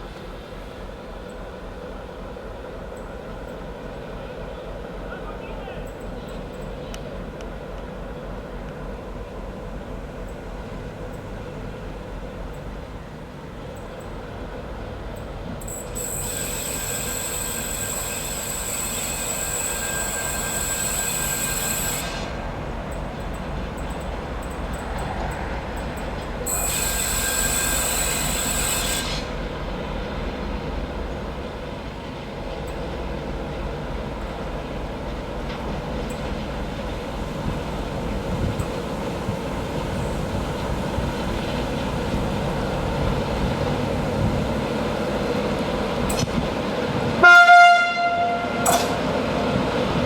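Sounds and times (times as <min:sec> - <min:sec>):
train rumbling: 0:00.0 - 0:50.0
wheels squealing on rail: 0:15.6 - 0:29.8, 0:47.2 - 0:50.0
locomotive horn blast: 0:26.4 - 0:29.4, 0:47.2 - 0:49.2.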